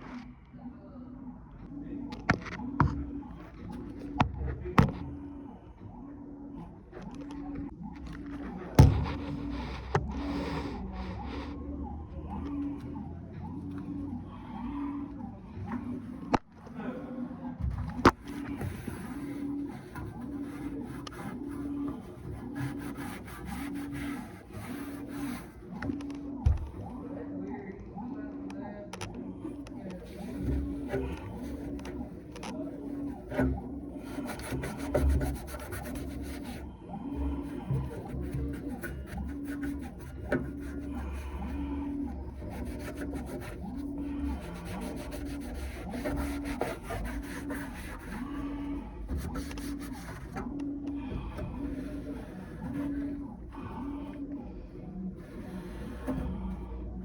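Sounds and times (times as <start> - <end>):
low steady hum: 0.0 - 57.0
scrubbing with rubbing squeaks: 7.3 - 11.9, 18.0 - 26.9, 29.5 - 54.2.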